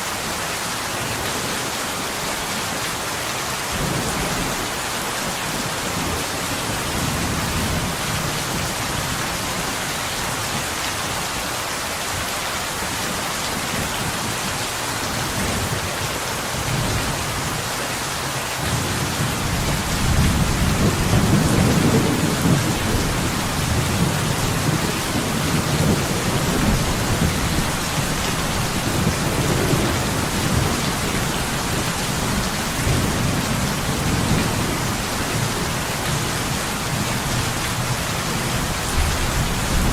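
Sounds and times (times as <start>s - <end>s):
thunder rumble: 18.8s - 35.7s, 38.5s - 39.9s
rain on window glass: 18.8s - 39.9s.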